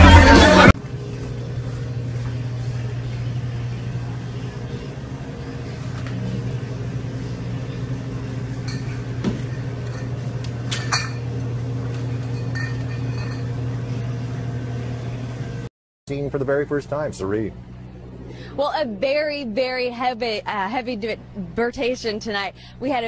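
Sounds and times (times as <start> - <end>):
machine humming: 0.0 - 19.9
light clinks: 12.3 - 13.6.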